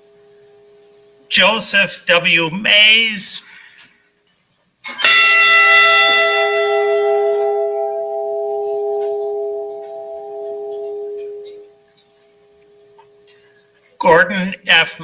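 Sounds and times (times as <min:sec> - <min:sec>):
ship's bell ringing out: 0:05.0 - 0:11.8.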